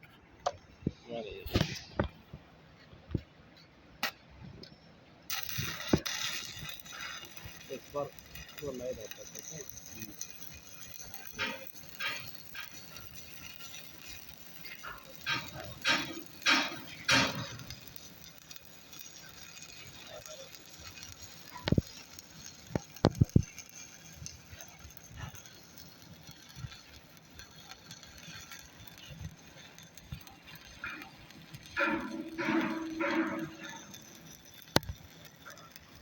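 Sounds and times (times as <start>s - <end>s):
hammer striking metal: 31.8s - 33.8s.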